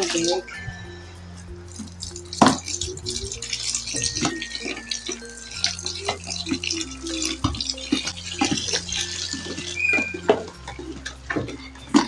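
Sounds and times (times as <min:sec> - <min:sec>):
water pouring into bucket: 0:00.0 - 0:00.7, 0:01.6 - 0:12.0.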